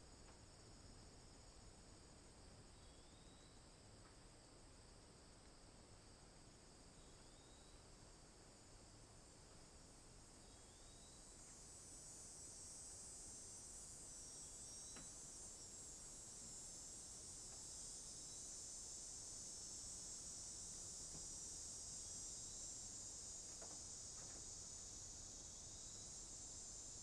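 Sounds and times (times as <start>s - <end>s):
cicadas calling: 10.4s - 27.0s.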